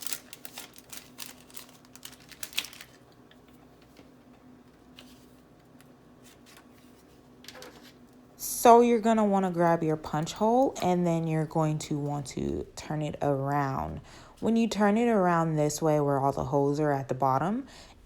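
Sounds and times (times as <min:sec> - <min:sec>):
paper cards clicking and rustling: 0:00.0 - 0:04.2.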